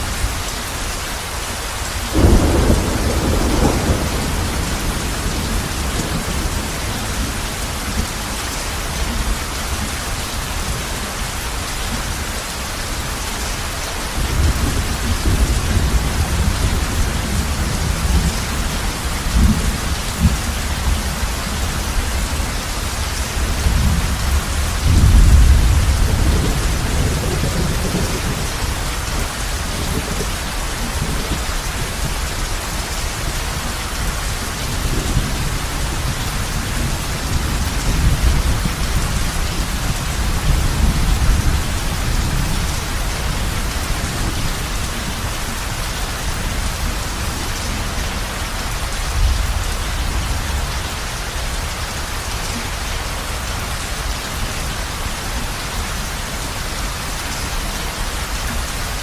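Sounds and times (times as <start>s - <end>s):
heavy rain on a roof: 0.0s - 59.0s
thunder rumbling: 2.1s - 8.1s, 14.2s - 32.2s.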